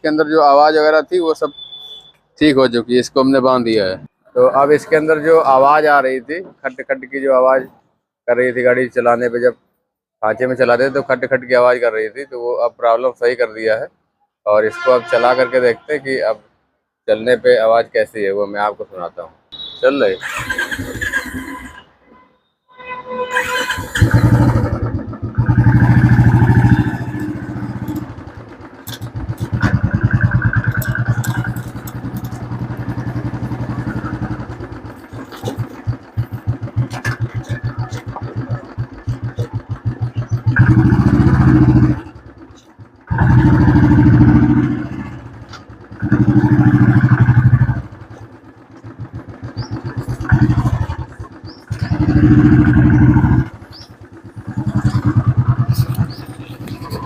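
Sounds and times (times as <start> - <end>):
motorcycle engine revving: 20.2 - 21.8, 23.2 - 57.0.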